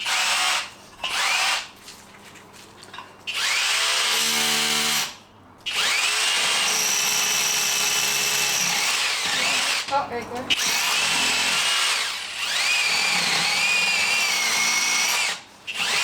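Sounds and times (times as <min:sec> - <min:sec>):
electric drill whining: 0:10.5 - 0:16.0.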